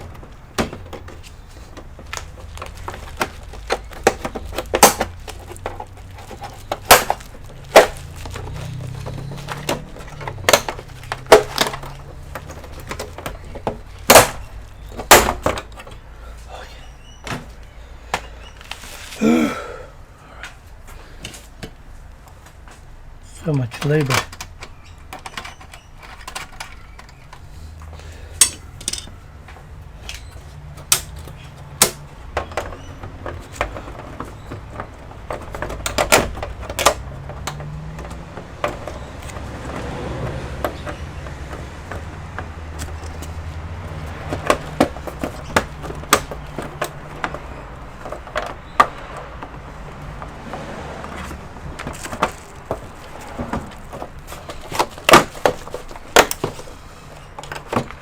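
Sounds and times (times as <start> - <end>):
clicks and knocks of tools: 0.0 - 16.0, 23.6 - 39.9.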